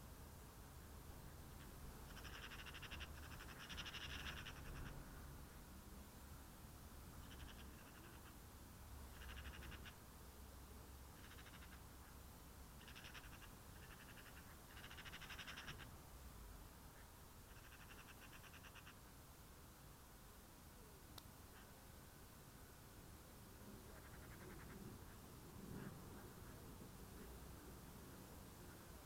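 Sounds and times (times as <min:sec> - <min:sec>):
small animal trilling: 0:02.1 - 0:04.9, 0:12.8 - 0:15.9.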